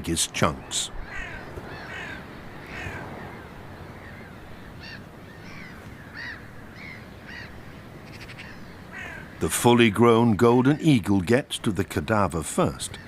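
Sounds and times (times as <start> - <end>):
birds making harsh calls: 0.4 - 9.5.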